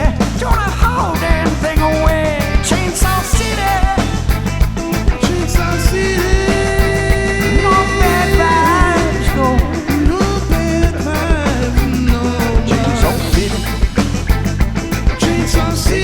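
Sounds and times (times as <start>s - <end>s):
live rock band playing: 0.0s - 16.0s
lead guitar bending notes: 4.5s - 15.2s.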